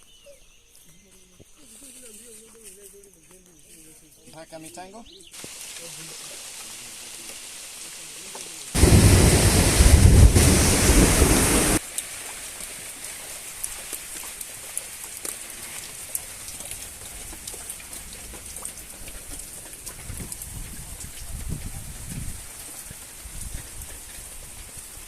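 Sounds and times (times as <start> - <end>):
heavy rain rushing: 5.4 - 13.6
light steady rain: 5.4 - 25.0
raindrops ticking: 5.4 - 25.0.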